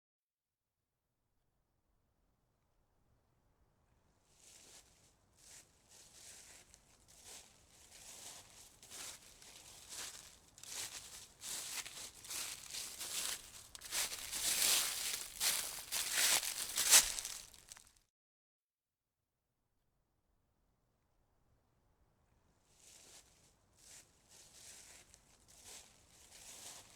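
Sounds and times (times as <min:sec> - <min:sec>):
footsteps crunching: 0:04.6 - 0:17.9, 0:23.0 - 0:26.9.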